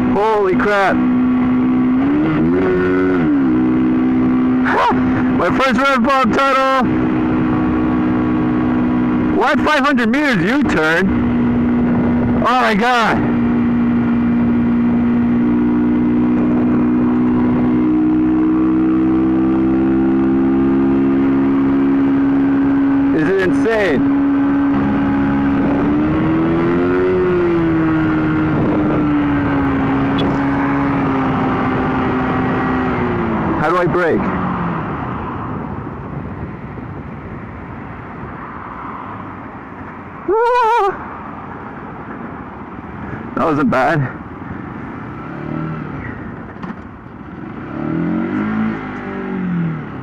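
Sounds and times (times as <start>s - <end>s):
motorcycle engine running: 0.0s - 37.4s.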